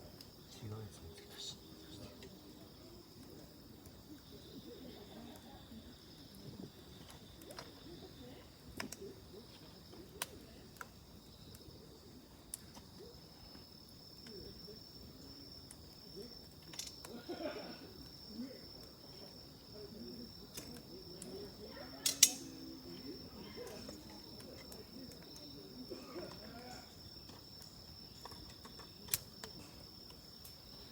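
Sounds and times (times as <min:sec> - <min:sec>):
high insect trill: 0:00.0 - 0:30.9
wood fire crackling and popping: 0:06.2 - 0:17.2, 0:23.0 - 0:30.9.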